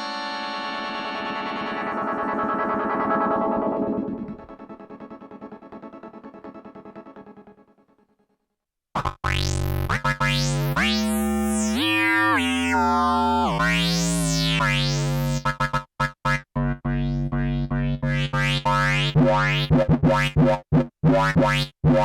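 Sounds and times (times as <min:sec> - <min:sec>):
synthesizer playing chords: 0:09.2 - 0:19.8.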